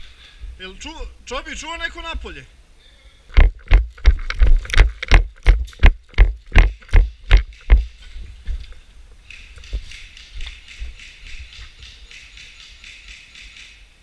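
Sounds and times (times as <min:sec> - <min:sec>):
running footsteps thudding: 0:03.4 - 0:08.7.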